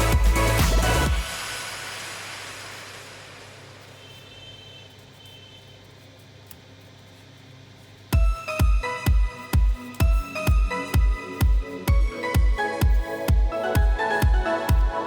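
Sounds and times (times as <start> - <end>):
electronic music: 0.0 - 3.7, 8.1 - 15.0
hissing wash: 1.2 - 3.8.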